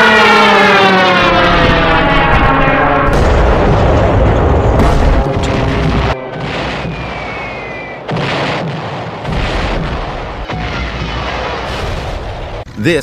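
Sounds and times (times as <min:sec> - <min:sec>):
dive-bomber siren screaming: 0:00.0 - 0:03.3, 0:05.1 - 0:08.2, 0:10.3 - 0:11.6
aircraft engine roar: 0:00.0 - 0:08.1
explosions: 0:01.3 - 0:12.7
gunfire: 0:03.1 - 0:12.6.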